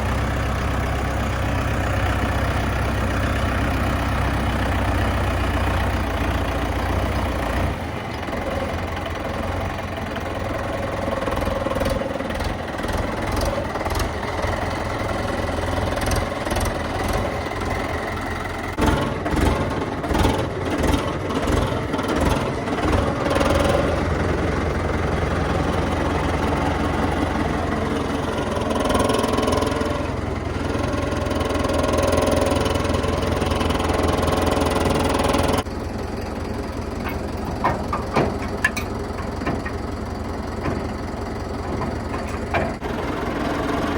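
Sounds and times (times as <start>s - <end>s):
diesel engine running: 0.0s - 43.9s
irregular knocks and clatter: 36.8s - 42.8s.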